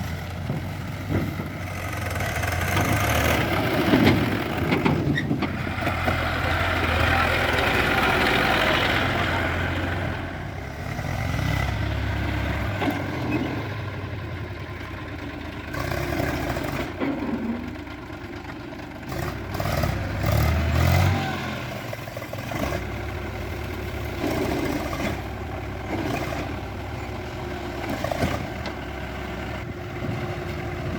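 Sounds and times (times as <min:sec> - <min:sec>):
diesel engines working: 0:00.0 - 0:30.9
clatter: 0:00.4 - 0:06.2, 0:15.7 - 0:20.9.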